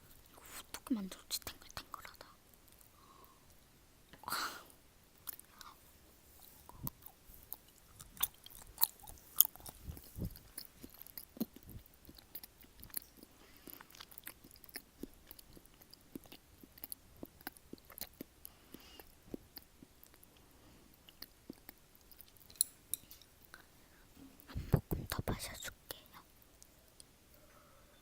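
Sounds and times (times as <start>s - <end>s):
close chewing with wet smacks: 6.4s - 22.7s.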